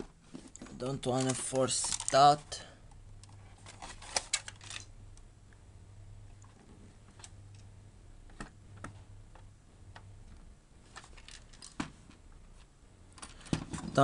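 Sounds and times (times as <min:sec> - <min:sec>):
low electrical hum: 0:00.0 - 0:14.0
plastic parts clicking and tapping: 0:00.4 - 0:02.3, 0:02.9 - 0:04.9, 0:08.3 - 0:12.0.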